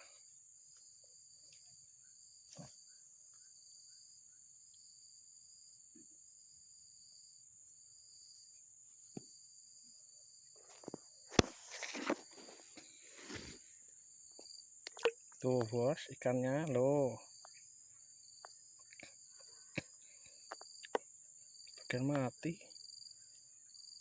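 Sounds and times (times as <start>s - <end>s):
pulsing insect chirp: 0.0s - 24.0s
insects shrilling drone: 9.8s - 24.0s.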